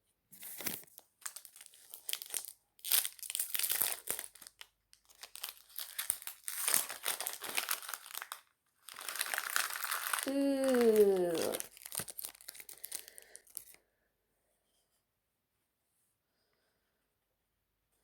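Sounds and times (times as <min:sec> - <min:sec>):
wrapper crinkling and tearing: 0:00.4 - 0:13.8.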